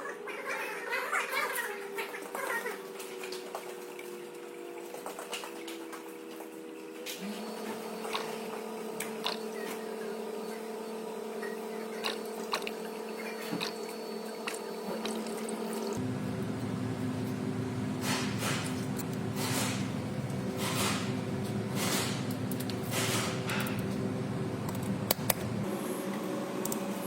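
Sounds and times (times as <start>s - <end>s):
steady hum: 6.2s - 27.0s
liquid flowing: 12.0s - 16.0s.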